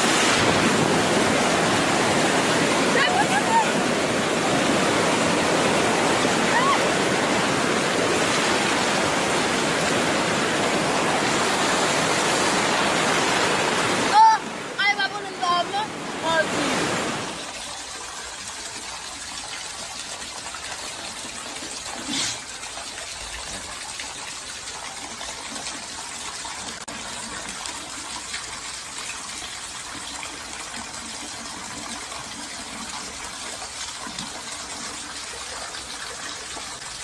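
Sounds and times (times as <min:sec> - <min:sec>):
hurricane wind and rain: 0:00.0 - 0:17.7.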